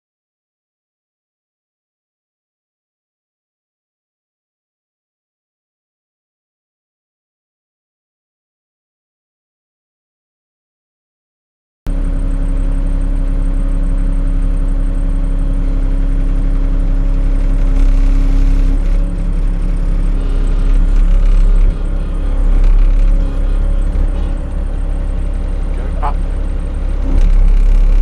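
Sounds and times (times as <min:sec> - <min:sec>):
diesel engine deep rumble: 0:11.9 - 0:28.0.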